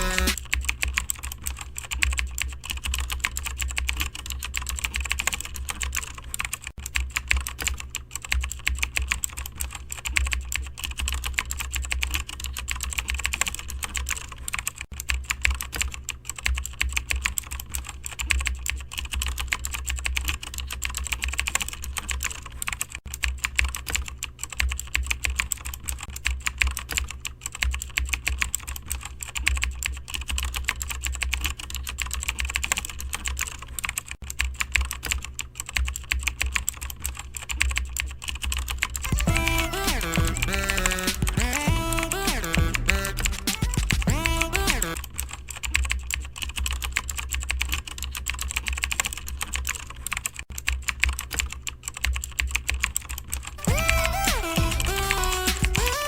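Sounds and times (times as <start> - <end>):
fast typing on computer keyboard: 0.0 - 56.0
steady low hum: 36.6 - 45.7.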